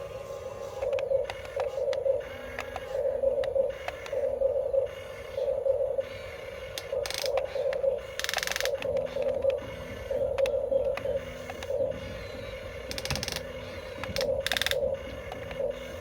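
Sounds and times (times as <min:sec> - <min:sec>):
small electric motors whirring: 0:06.1 - 0:16.0.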